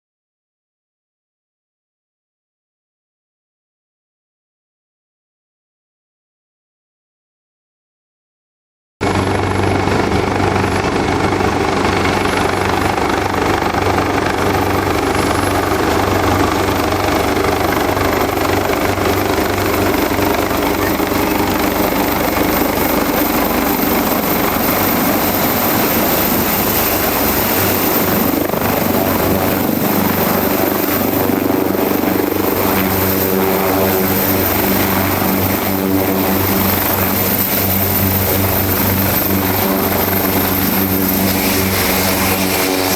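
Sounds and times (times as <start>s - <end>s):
helicopter running: 9.0s - 42.9s.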